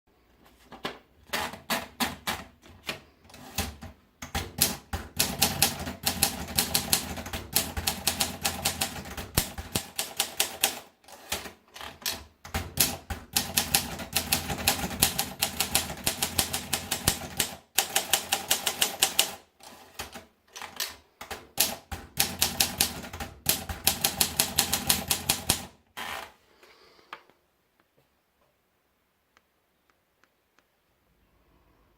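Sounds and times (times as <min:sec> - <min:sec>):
manual typewriter key strikes: 0:20.0 - 0:25.7.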